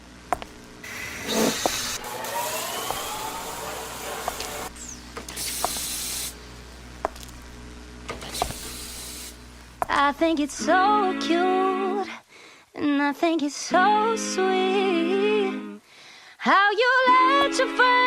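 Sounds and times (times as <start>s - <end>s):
hissing noise: 0.8s - 6.4s, 8.2s - 9.4s.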